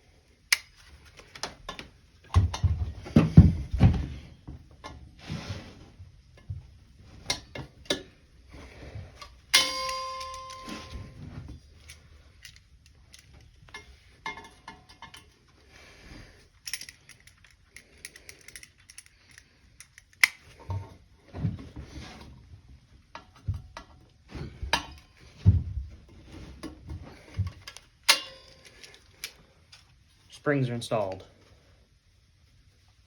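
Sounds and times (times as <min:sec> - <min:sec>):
metal springs clicking and scraping: 0:09.2 - 0:14.0.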